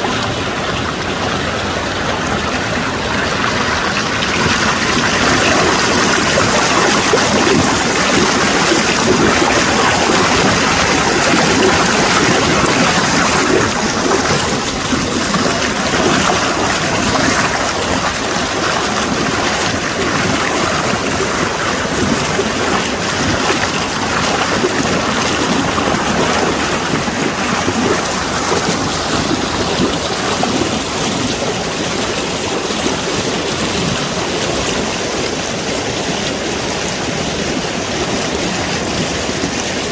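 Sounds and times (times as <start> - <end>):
stream rushing: 0.0 - 39.9.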